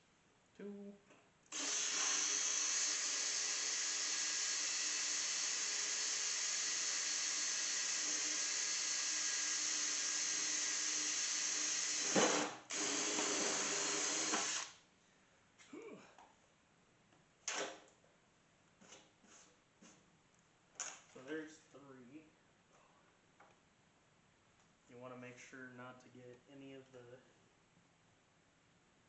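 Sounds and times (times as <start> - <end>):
power drill drilling: 1.5 - 14.7.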